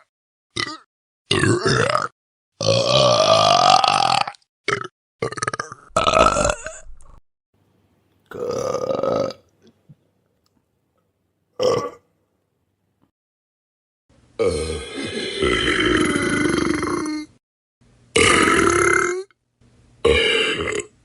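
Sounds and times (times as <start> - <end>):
person burping: 0.0 - 7.2, 8.3 - 9.4, 11.6 - 12.1, 14.4 - 17.4, 18.1 - 19.4, 20.0 - 20.9.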